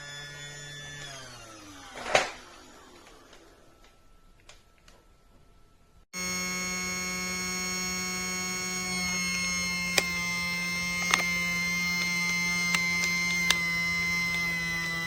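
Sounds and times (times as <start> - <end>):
loud steady buzzing tone: 6.2 - 15.0
sharp clicks: 9.8 - 15.0.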